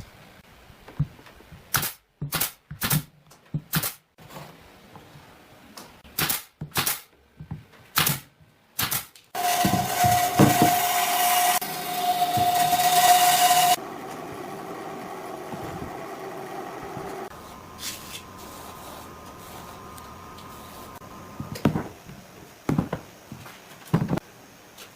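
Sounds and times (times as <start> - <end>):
power tool whining: 9.4 - 17.3
steady hum: 11.6 - 23.3.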